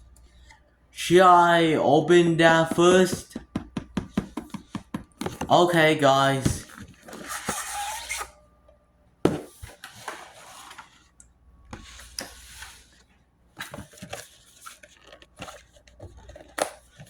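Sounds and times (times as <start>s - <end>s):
box clicks and knocks: 3.1s - 5.8s
packaging crinkling and rustling: 12.1s - 17.0s.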